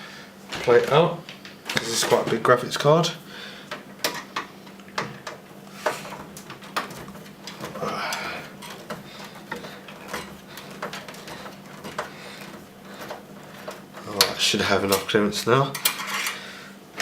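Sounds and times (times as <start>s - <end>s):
metal cover plate scraping: 4.1s - 16.5s.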